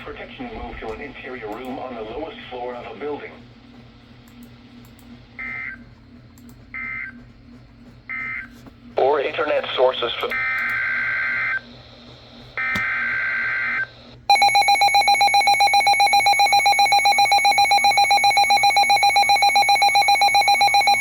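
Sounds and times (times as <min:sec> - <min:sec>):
pulsing electronic alert tone: 0:14.3 - 0:21.0.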